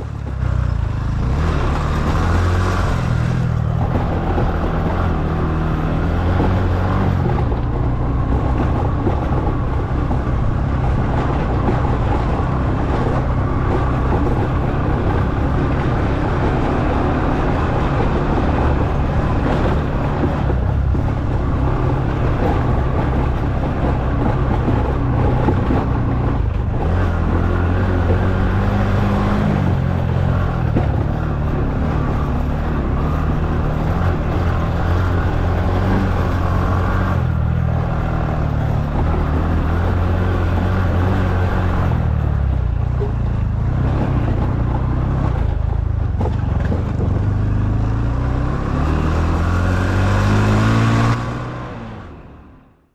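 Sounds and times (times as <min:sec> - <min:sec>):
motorcycle engine running: 0:00.0 - 0:52.7.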